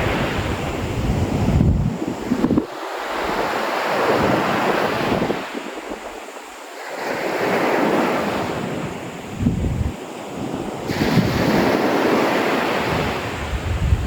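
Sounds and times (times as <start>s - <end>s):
wind buffeting microphone: 0.0s - 6.5s, 7.4s - 14.0s
sea waves washing onto beach: 0.0s - 14.0s.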